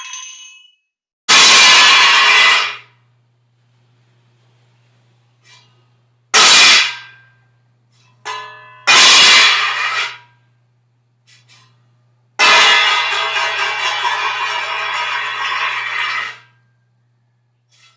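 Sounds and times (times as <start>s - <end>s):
plate rattling as it spins: 12.7s - 16.4s.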